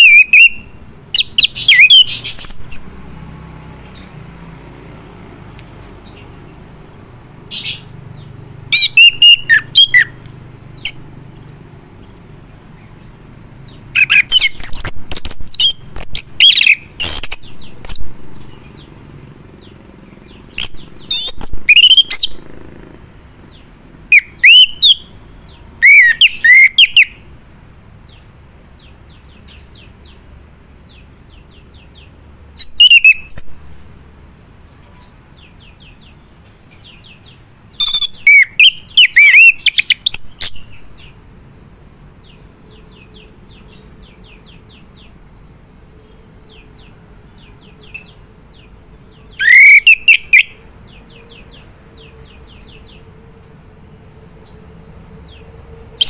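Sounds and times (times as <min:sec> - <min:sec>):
thrush singing whistled phrases: 0:00.0 - 0:02.9, 0:07.6 - 0:11.2, 0:14.0 - 0:18.2, 0:20.6 - 0:22.4, 0:24.1 - 0:25.1, 0:25.8 - 0:27.2, 0:32.6 - 0:33.5, 0:37.8 - 0:40.7, 0:49.4 - 0:50.6.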